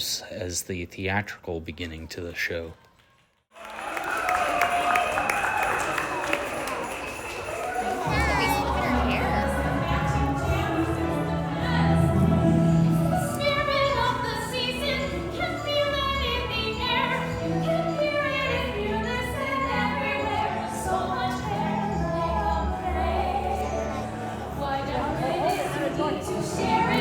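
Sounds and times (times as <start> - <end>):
group singing together: 8.0 - 15.1, 18.9 - 27.0.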